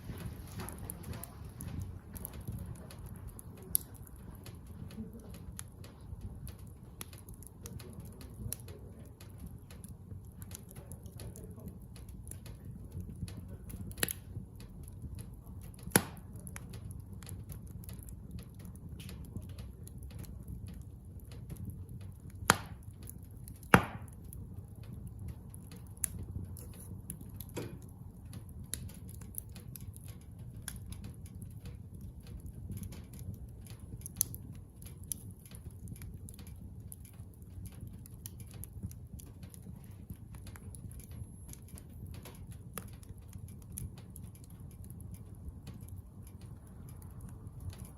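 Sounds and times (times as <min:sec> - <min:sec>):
bonfire crackling and popping: 0:00.0 - 0:47.9
low steady rumble: 0:00.0 - 0:47.9
loud snaps of wood: 0:15.8 - 0:16.2, 0:22.4 - 0:24.2.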